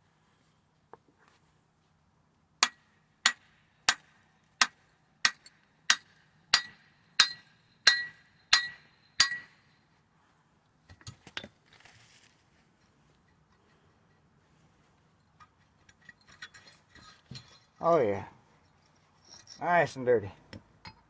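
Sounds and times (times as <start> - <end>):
hammer striking steel: 2.6 - 9.5.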